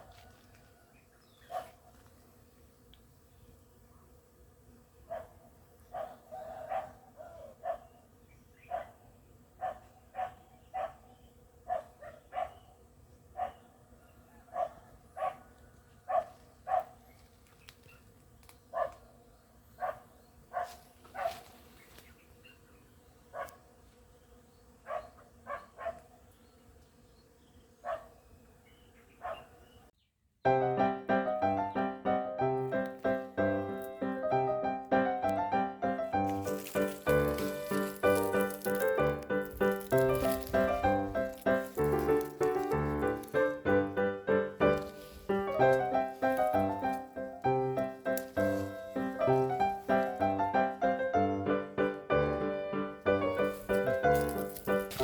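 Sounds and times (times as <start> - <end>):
dog barking: 1.4 - 1.9, 5.0 - 8.0, 8.6 - 9.0, 9.6 - 13.7, 14.3 - 17.0, 18.7 - 19.1, 19.8 - 21.5, 23.3 - 23.6, 24.8 - 26.2, 27.8 - 28.2, 29.2 - 29.6.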